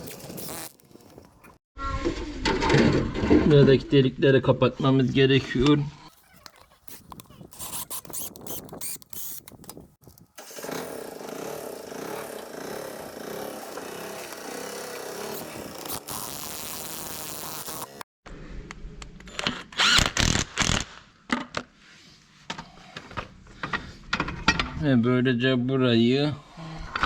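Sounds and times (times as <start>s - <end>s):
power tool running: 10.4s - 18.0s.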